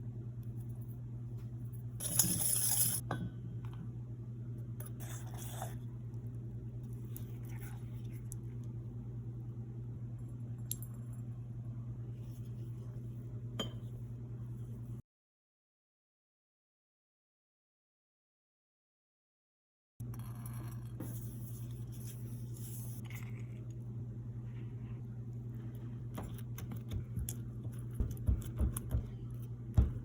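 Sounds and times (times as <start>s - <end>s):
steady low hum: 0.0s - 15.0s, 20.0s - 30.0s.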